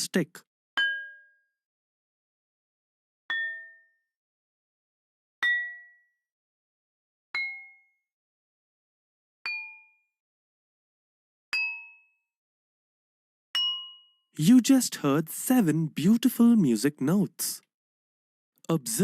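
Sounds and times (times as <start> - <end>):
water glasses ringing notes: 13.6 - 14.2.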